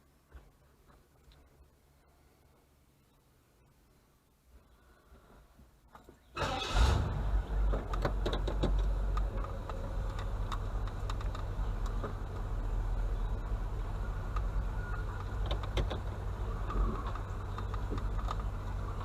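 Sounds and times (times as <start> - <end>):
vehicle engine starting and idling: 6.4 - 19.0
faint clicks: 7.7 - 12.5, 14.2 - 19.0.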